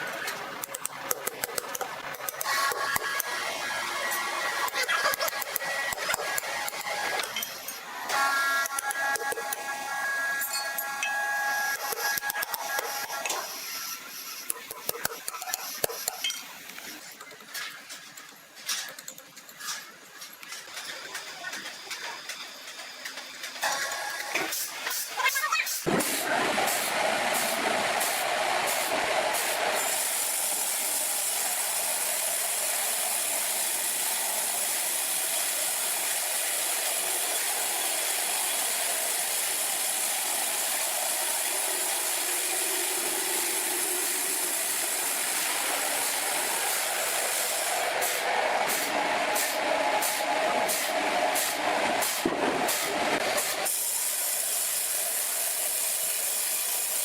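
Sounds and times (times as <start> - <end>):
sawmill machinery running: 0.0 - 16.2, 21.0 - 57.0.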